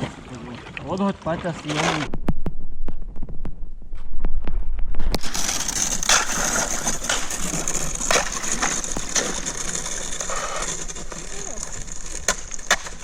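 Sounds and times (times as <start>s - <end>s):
ice cracking against kayak hull: 1.4s - 3.6s, 4.8s - 13.0s.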